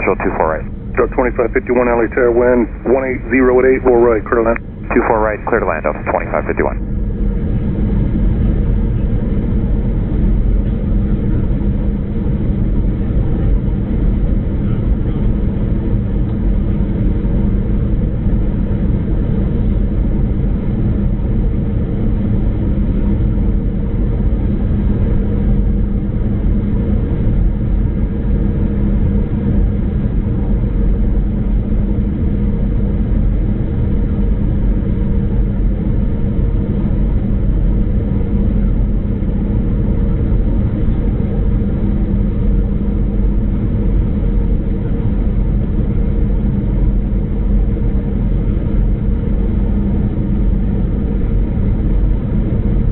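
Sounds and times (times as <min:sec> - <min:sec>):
aircraft cabin engine rumble: 0:00.0 - 0:52.9
low steady hum: 0:00.0 - 0:52.9.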